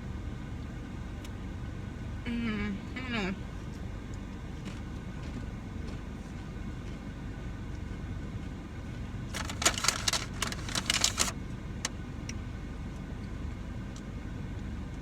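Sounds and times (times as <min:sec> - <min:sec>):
fan blowing air: 0:09.0 - 0:12.0
crunching tortilla chips: 0:09.3 - 0:11.4.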